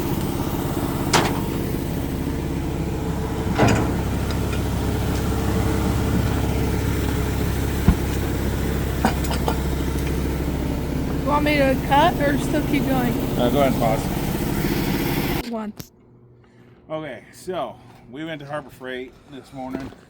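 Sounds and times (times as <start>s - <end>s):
engine idling: 0.0s - 15.4s.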